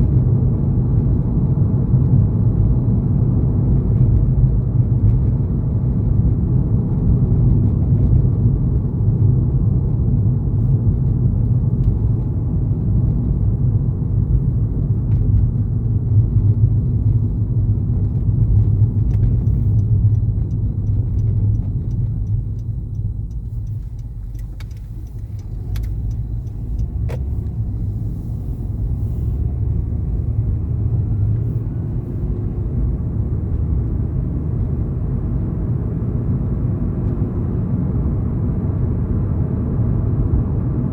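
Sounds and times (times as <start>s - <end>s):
car engine and tyres rumbling: 0.0s - 40.9s
faint clicks: 18.6s - 27.6s.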